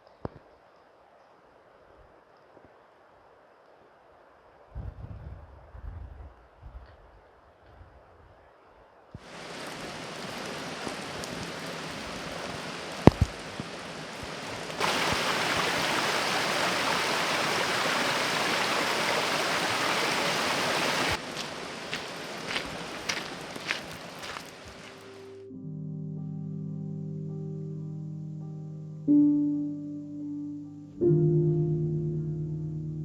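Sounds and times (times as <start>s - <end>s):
running water rushing: 9.2s - 25.3s.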